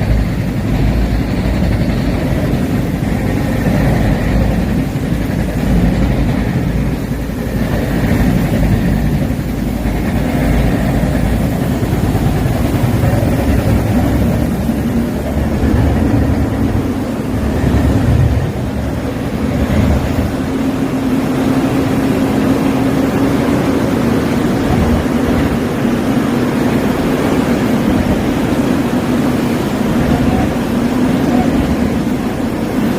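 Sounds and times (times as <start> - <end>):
drilling rig rumbling: 0.0 - 32.9
steady hum: 0.0 - 32.9.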